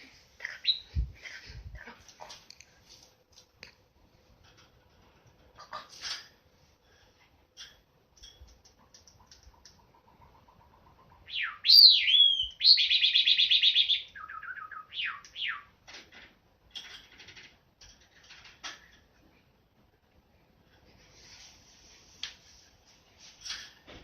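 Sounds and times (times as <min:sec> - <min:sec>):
sparrow singing: 0:00.4 - 0:01.1, 0:11.1 - 0:15.7
bird clicks: 0:08.2 - 0:09.8.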